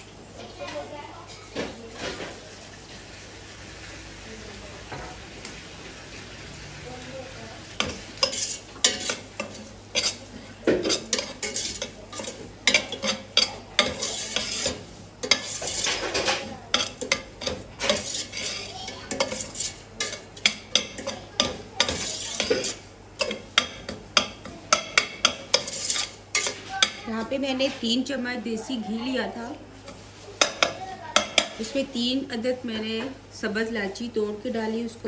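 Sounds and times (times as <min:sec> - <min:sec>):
food sizzling in ghee: 0:00.0 - 0:35.0
spoon scraping metal pot: 0:07.8 - 0:28.0.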